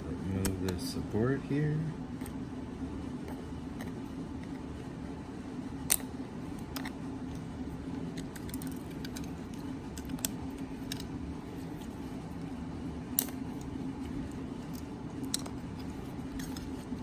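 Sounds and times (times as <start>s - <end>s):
steady low hum: 0.0s - 17.0s
plastic clicks and snaps: 8.2s - 11.1s.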